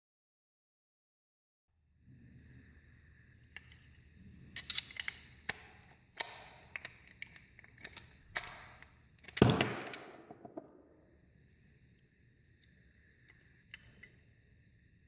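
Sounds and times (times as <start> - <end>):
metal clicks of lock parts: 4.6 - 10.6.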